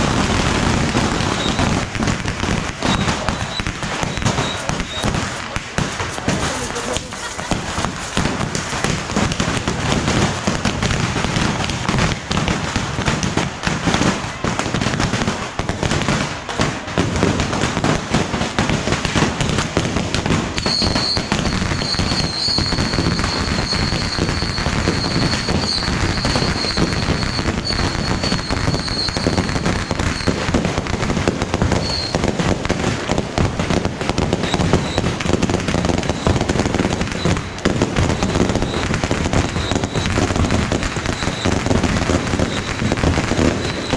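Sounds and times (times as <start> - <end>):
fireworks crackling and popping: 0.0 - 43.9
high whistle: 1.3 - 1.7, 2.8 - 5.2, 20.6 - 30.4, 31.8 - 32.2, 38.6 - 40.2, 41.1 - 41.6.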